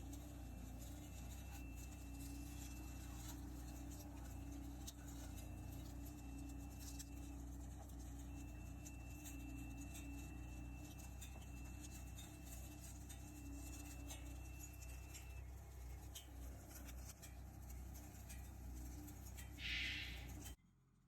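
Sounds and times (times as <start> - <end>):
thin high whine: 0.0 - 20.6
low machine engine drone: 0.0 - 21.0.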